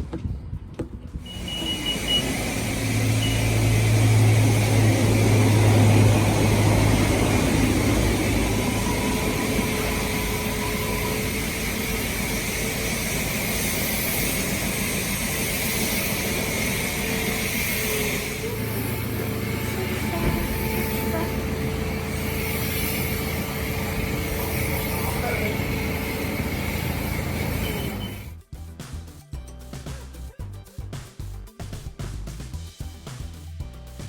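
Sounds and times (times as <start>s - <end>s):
road and wind noise: 0.0s - 28.4s
car engine hum: 1.3s - 28.3s.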